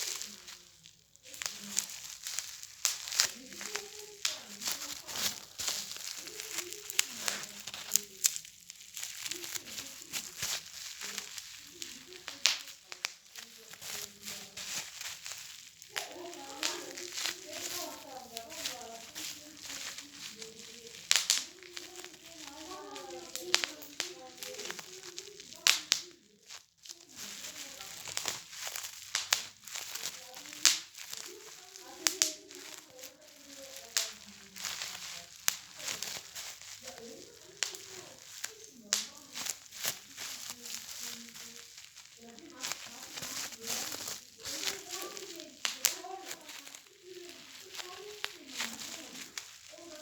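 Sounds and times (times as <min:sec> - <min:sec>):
bubble wrap popping: 0:00.0 - 0:50.0
plastic crinkling: 0:00.0 - 0:50.0
plastic popping toy pops: 0:20.6 - 0:22.1, 0:25.6 - 0:26.1.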